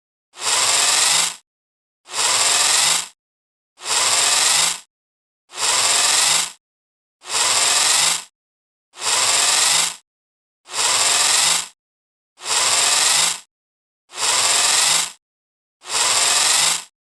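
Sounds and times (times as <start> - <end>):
servo motor whirring: 0.4 - 1.4, 2.1 - 3.2, 3.8 - 4.9, 5.5 - 6.6, 7.2 - 8.3, 9.0 - 10.0, 10.7 - 11.8, 12.4 - 13.5, 14.1 - 15.2, 15.8 - 16.9.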